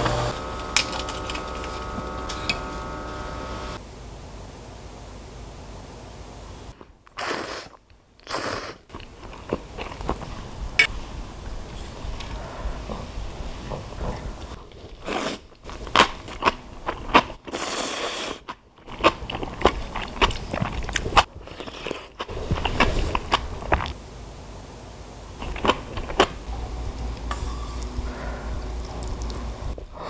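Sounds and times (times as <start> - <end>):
person chewing crisp food: 7.2 - 10.7, 14.9 - 24.0.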